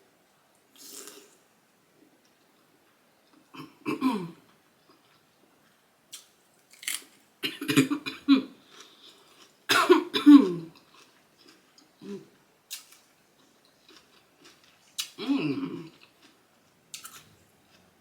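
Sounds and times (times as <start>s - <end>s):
throat-clearing sounds: 15.2s - 16.0s.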